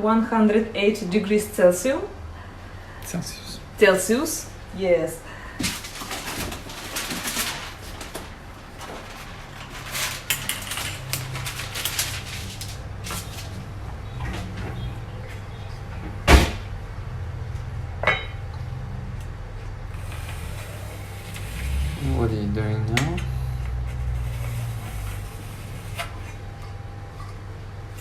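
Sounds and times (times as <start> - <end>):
low steady hum: 0.0 - 28.0
clicks and rustles: 5.6 - 13.6.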